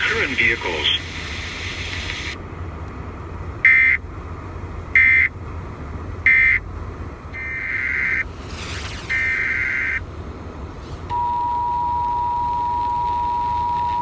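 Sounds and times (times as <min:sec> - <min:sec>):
low steady rumble: 0:00.0 - 0:14.0
screeching data tones: 0:07.4 - 0:10.0.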